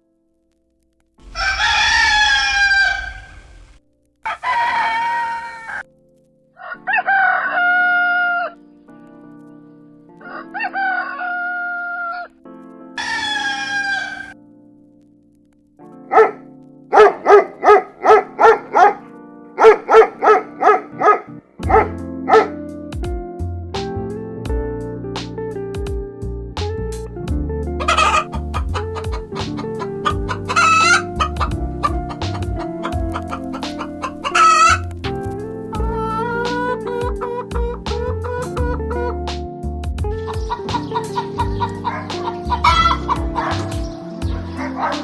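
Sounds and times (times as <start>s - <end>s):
rooster crowing: 1.2s - 5.8s, 6.6s - 8.6s, 10.2s - 12.3s, 13.0s - 14.4s, 27.8s - 28.4s, 30.1s - 31.5s, 32.1s - 34.8s.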